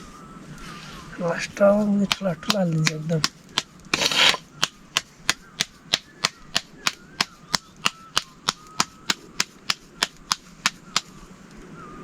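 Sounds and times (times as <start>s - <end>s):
sharp knocks: 2.0s - 11.1s.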